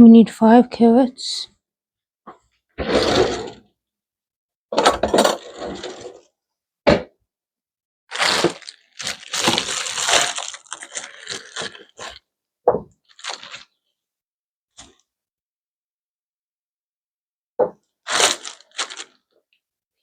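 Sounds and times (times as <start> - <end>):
crunchy rustling of carrots: 8.1 - 12.2, 13.1 - 13.7, 18.1 - 19.3.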